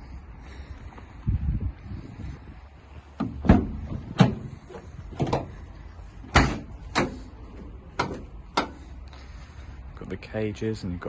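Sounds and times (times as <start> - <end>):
van doors unlatching and opening: 3.0 - 9.0
metallic clunks and clicks: 3.2 - 5.6, 6.2 - 8.9.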